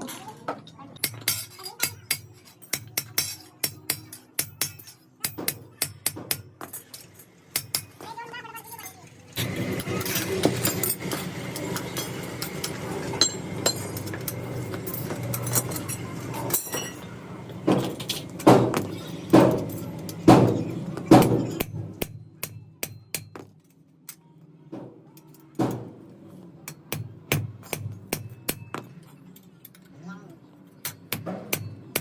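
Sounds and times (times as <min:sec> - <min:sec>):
metal parts clattering: 0:08.6 - 0:22.0
hammer blows ringing on metal: 0:17.6 - 0:23.2, 0:25.6 - 0:26.1.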